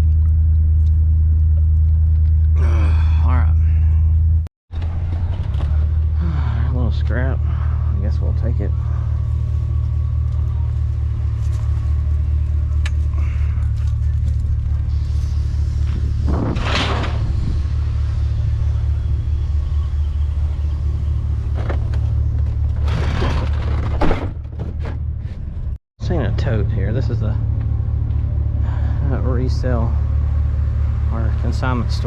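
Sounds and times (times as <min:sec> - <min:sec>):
vehicle engine and road rumble: 0:00.0 - 0:32.0.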